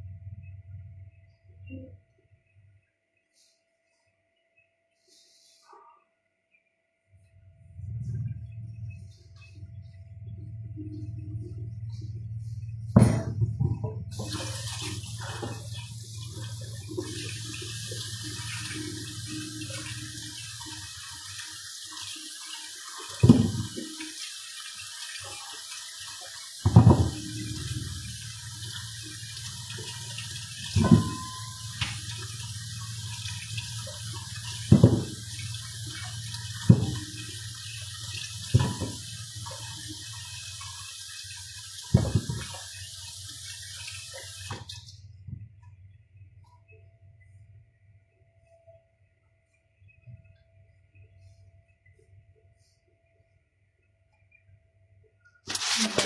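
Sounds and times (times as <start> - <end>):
water running from tap into sink: 14.1 - 44.8, 55.5 - 56.0.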